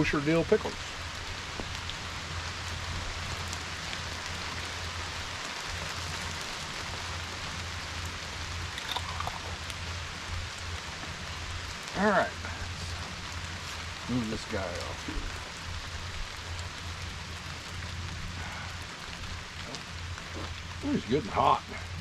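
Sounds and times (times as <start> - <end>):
low steady hum: 0.0 - 22.0
steady rain falling: 0.0 - 22.0.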